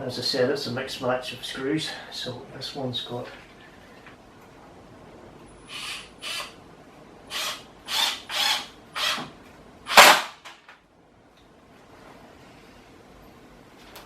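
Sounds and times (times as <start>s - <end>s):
power drill driving screw into wood: 5.7s - 6.6s, 7.3s - 9.3s, 9.9s - 10.4s.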